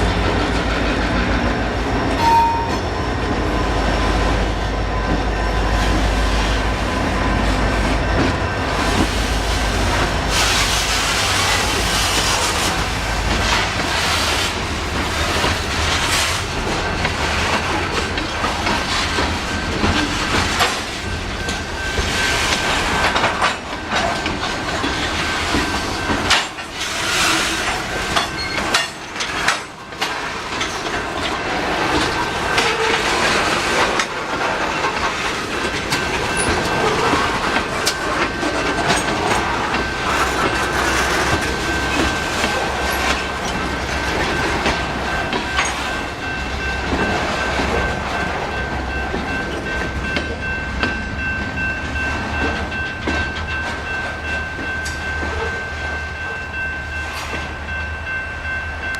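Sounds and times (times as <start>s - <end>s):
freight train rumble: 0.0s - 58.9s
thin high tone: 2.2s - 2.9s
train wheels clacking over rail joints: 7.8s - 58.9s.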